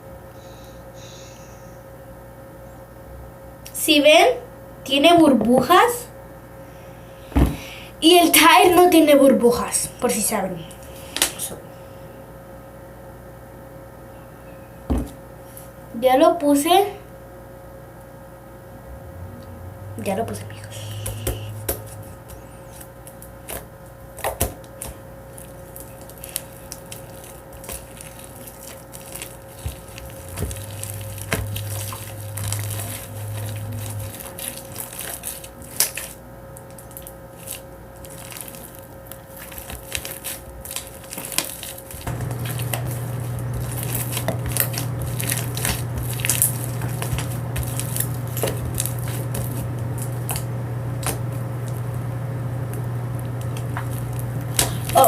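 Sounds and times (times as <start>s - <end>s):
low steady hum: 0.0s - 55.0s
slime squelching and popping: 24.2s - 50.4s, 53.5s - 55.0s.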